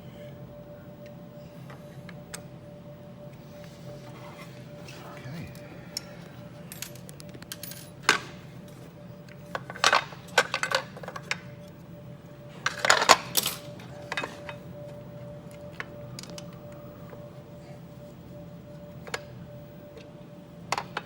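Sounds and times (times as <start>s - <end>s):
low machine hum: 0.0s - 21.0s
metal parts and tools clinking: 6.7s - 8.2s.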